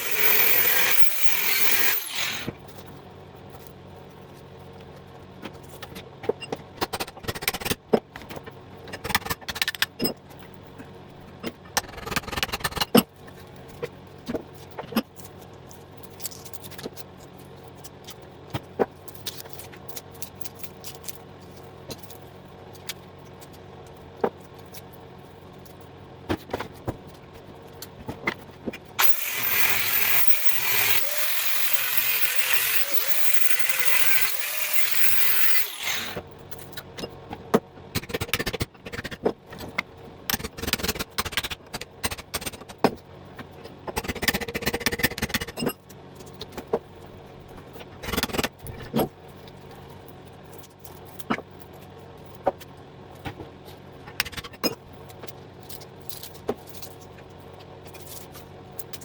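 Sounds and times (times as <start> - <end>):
angle grinder cutting metal: 0.0 - 2.5, 29.0 - 36.2.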